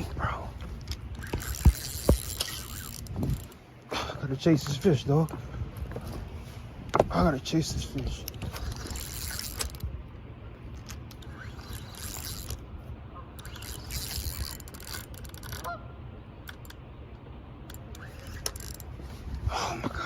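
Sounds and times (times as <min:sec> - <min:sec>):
wind rumble on microphone: 0:00.0 - 0:03.6, 0:04.7 - 0:14.9, 0:18.0 - 0:20.0
footsteps in brush: 0:04.7 - 0:07.1.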